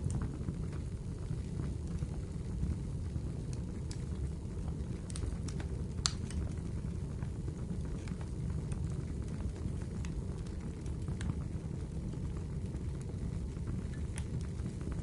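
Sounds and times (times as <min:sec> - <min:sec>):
fire crackling and popping: 0:00.0 - 0:15.0
fire flames rumbling: 0:00.0 - 0:15.0.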